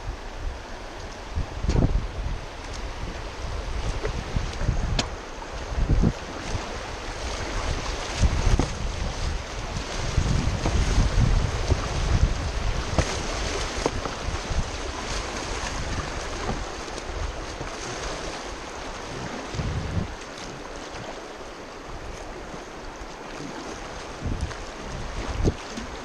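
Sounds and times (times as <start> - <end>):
moving water: 0.0 - 26.0
wind buffeting microphone: 0.0 - 26.0.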